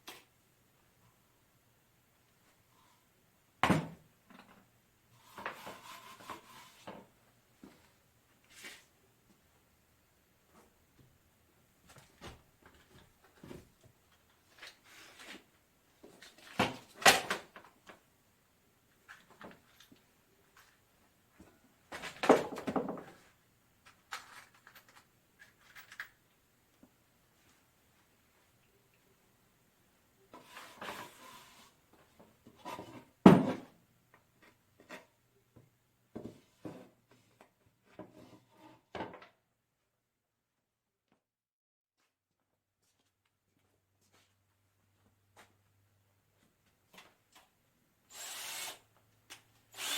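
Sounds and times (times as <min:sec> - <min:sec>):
objects knocking and clattering: 0:21.9 - 0:26.2.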